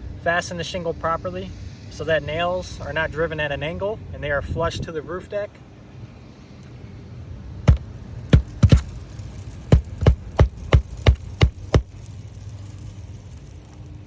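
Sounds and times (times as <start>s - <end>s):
hammer nailing shingle: 7.7s - 12.1s.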